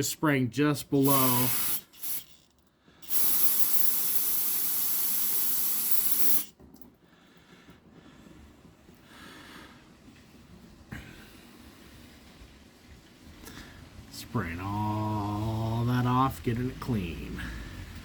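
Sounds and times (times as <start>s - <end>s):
aerosol spray hissing: 1.0s - 2.3s, 3.0s - 6.5s.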